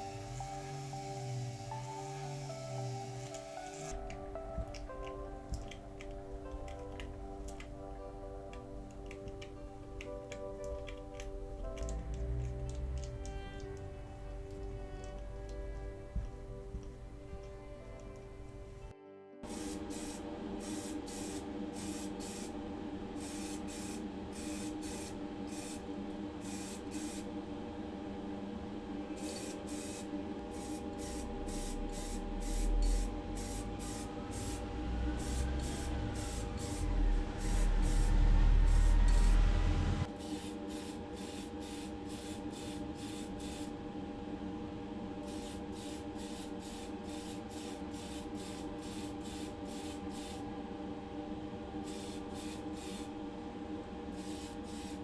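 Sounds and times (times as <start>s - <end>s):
paint spraying in hissing bursts: 0.0s - 4.1s, 19.4s - 22.6s, 23.2s - 27.3s, 29.2s - 39.4s, 40.0s - 43.8s, 45.2s - 50.4s, 51.8s - 53.1s, 54.2s - 55.0s
steady hum: 0.0s - 55.0s
low rumble with whine: 32.3s - 40.1s.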